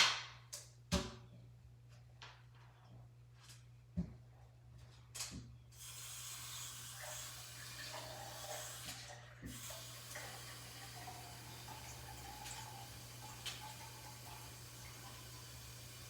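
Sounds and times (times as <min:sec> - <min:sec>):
water pouring into reservoir: 0:06.0 - 0:16.0.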